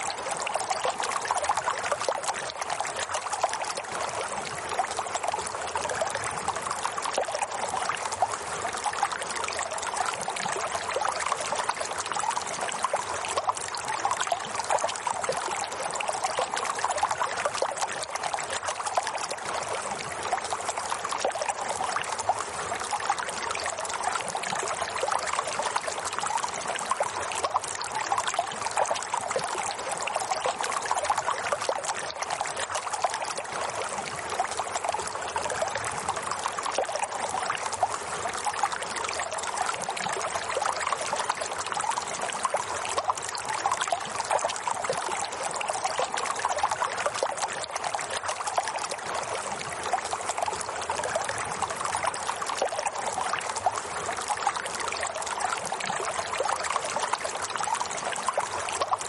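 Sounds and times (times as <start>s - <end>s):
water trickling: 0.0s - 59.0s.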